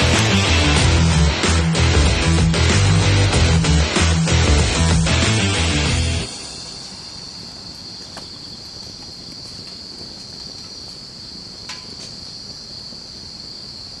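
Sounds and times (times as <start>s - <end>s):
crickets chirring: 0.0s - 2.7s, 6.0s - 14.0s.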